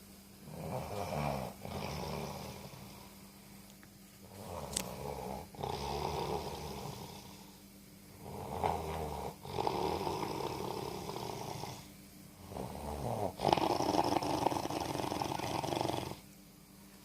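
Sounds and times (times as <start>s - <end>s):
person snoring: 0.4s - 3.2s, 4.2s - 7.6s, 8.2s - 16.2s.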